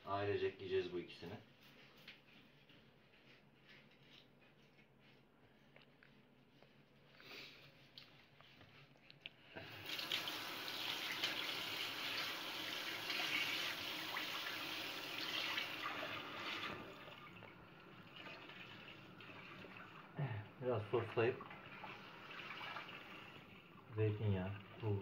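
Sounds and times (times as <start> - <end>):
tap water running into sink: 9.6 - 20.2, 20.8 - 25.0.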